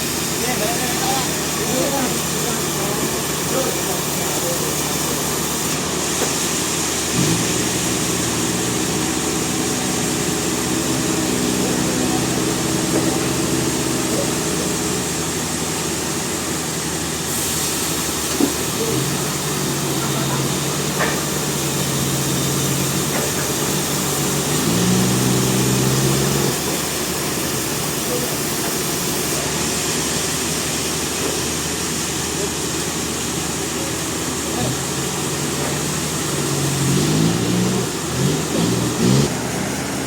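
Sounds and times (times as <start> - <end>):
sawmill engine running: 0.0 - 40.0.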